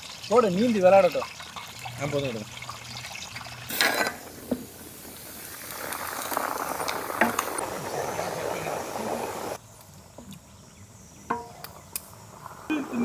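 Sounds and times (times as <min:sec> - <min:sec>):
chicken deep-frying in oil: 0:00.0 - 0:09.6.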